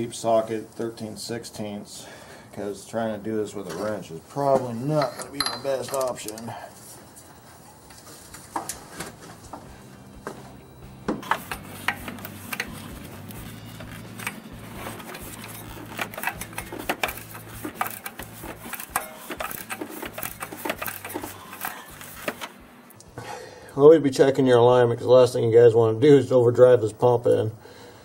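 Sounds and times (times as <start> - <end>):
ratchet clicking: 15.3 - 22.5.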